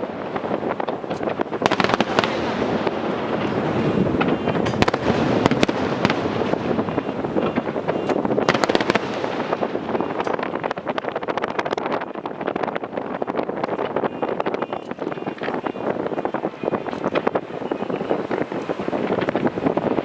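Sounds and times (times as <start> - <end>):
fireworks bangs: 0.0 - 20.0
fireworks crackling: 0.0 - 20.0.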